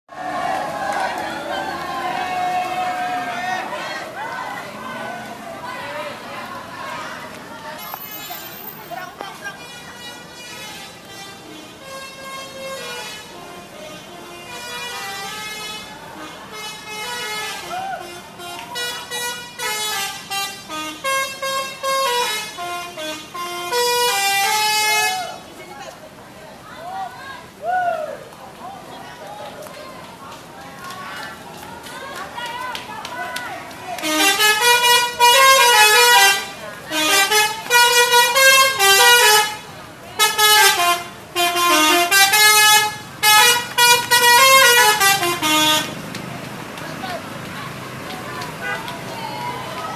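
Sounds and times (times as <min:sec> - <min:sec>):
musical bus horn melody: 0:09.6 - 0:25.3, 0:34.0 - 0:46.0, 0:48.6 - 0:48.8
musical air horn melody: 0:34.0 - 0:39.6, 0:40.2 - 0:46.0.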